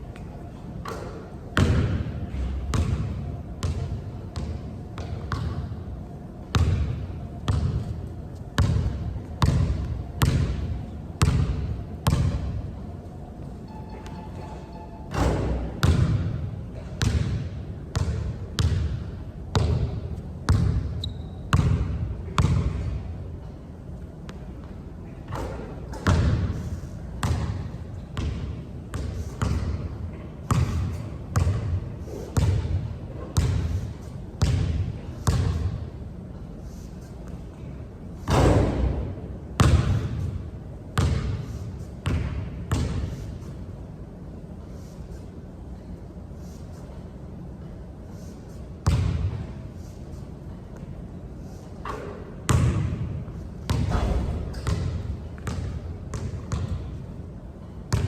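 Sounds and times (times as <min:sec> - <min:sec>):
basketball bouncing on a court: 0:00.9 - 0:05.7, 0:06.5 - 0:07.9, 0:08.6 - 0:12.6, 0:13.8 - 0:23.0, 0:25.3 - 0:26.6, 0:27.2 - 0:32.8, 0:33.4 - 0:33.8, 0:34.4 - 0:35.8, 0:38.3 - 0:40.4, 0:41.0 - 0:43.2, 0:48.8 - 0:49.4, 0:51.9 - 0:57.0, 0:57.6 - 0:58.0
high squeak: 0:13.6 - 0:15.8.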